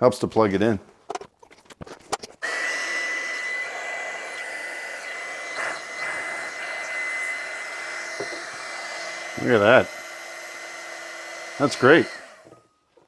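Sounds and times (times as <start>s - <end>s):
heat gun fan whining: 2.4s - 12.6s.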